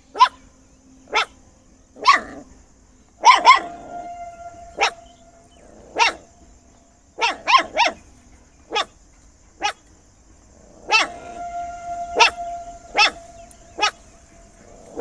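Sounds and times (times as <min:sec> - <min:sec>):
dog barking: 0:01.1 - 0:01.3, 0:02.0 - 0:02.4, 0:03.2 - 0:06.3, 0:07.2 - 0:08.0, 0:08.7 - 0:08.9, 0:10.9 - 0:14.0.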